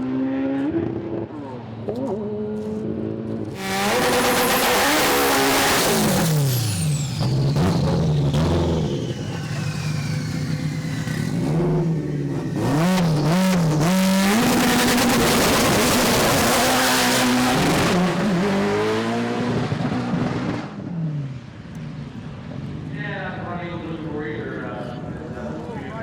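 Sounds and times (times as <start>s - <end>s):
drag car engine revving: 3.4s - 21.1s.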